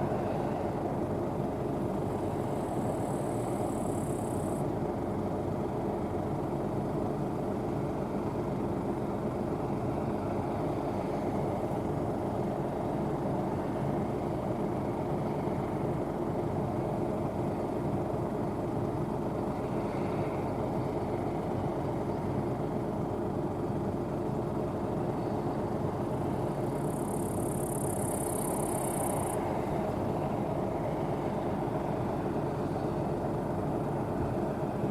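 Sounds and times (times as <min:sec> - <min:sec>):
combine harvester humming: 0:00.0 - 0:34.9.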